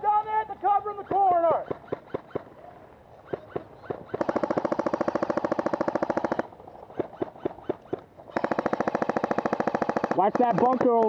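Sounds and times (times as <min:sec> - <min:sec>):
airsoft rifle full-auto burst: 0:03.4 - 0:11.0.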